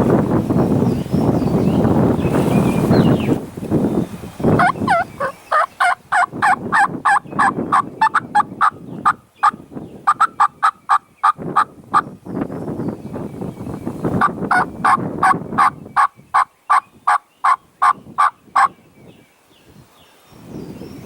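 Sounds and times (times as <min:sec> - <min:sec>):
turkey yelps: 0:04.6 - 0:11.0.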